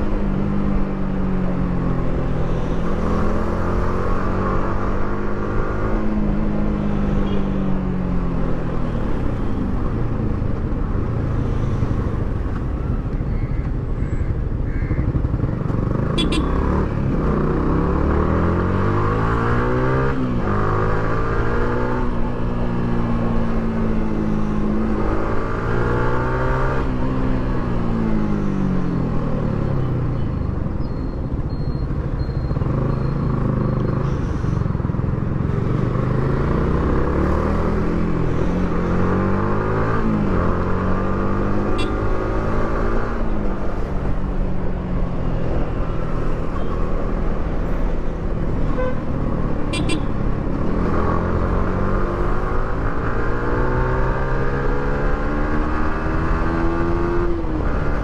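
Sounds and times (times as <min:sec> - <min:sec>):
wind and road rush: 0:00.0 - 0:58.0.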